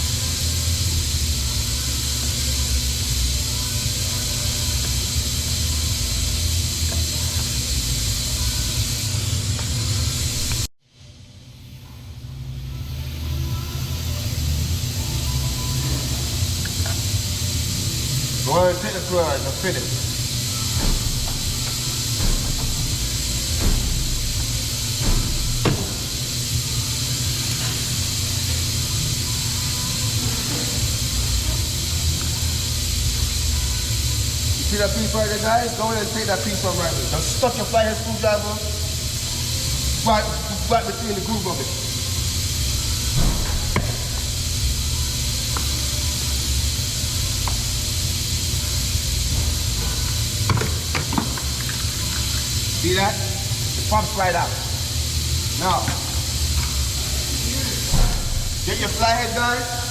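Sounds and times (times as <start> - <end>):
high hiss: 0.0 - 10.7, 11.4 - 59.9.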